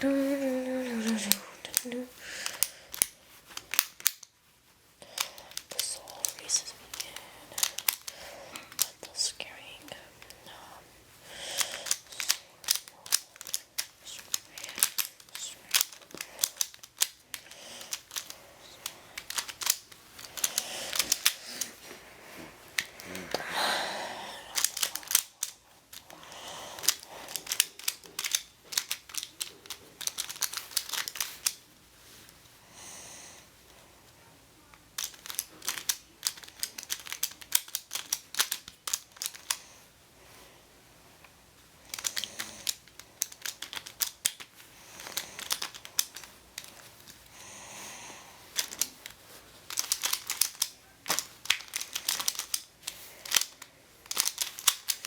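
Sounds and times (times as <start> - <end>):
plastic puzzle pieces clicking: 0.6 - 4.3, 5.0 - 10.6, 11.4 - 21.8, 24.4 - 31.6, 35.0 - 39.7, 41.9 - 47.2, 48.4 - 55.0.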